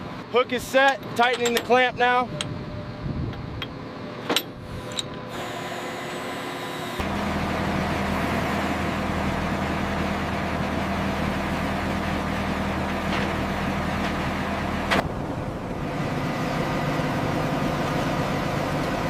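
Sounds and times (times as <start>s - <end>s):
rigging hardware clanks: 0.7s - 2.5s, 3.6s - 5.2s
heavy machine engine droning: 2.0s - 19.0s.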